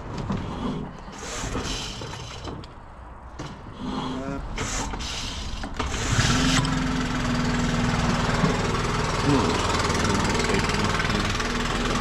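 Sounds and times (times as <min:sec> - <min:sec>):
petrol engine running steadily: 0:05.0 - 0:12.0.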